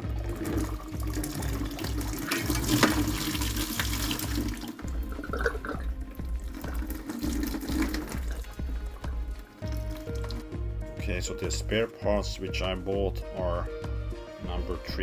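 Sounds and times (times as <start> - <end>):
water splashing from a mixer: 0.0 - 11.0.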